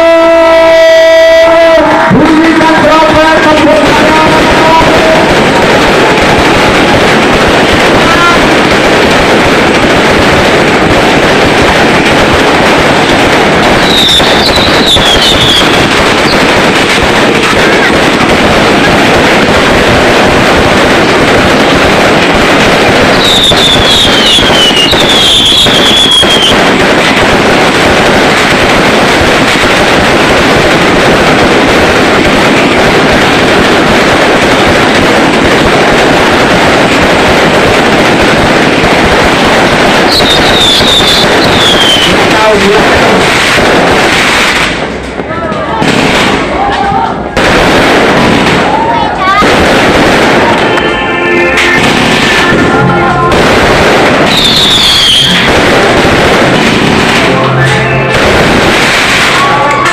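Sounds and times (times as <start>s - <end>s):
fireworks crackling and popping: 0.0s - 59.9s
falling whistles: 13.9s - 15.7s, 23.2s - 26.5s, 40.1s - 42.1s, 54.3s - 55.4s.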